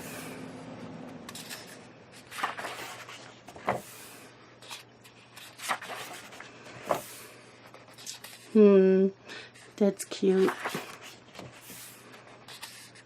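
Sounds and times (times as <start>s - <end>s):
paper pages turning: 1.3s - 4.0s, 4.6s - 8.5s, 10.3s - 13.0s.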